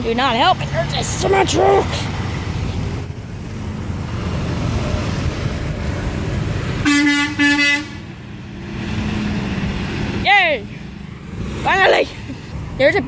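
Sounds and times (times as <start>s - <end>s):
traffic noise: 0.0s - 13.0s
truck horn blasts: 6.8s - 8.2s.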